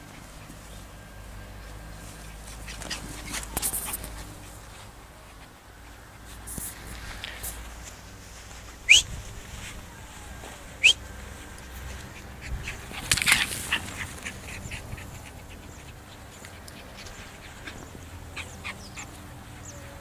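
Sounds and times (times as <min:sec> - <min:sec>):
dogs scuffling: 0:01.6 - 0:05.0, 0:06.4 - 0:19.2.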